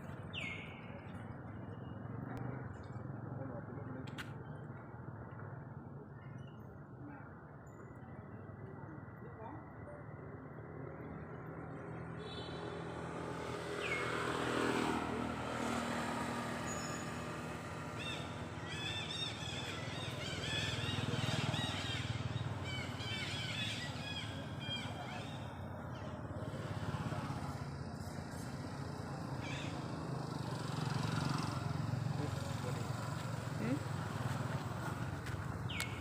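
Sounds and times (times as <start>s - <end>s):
engine hum: 12.8s - 36.0s.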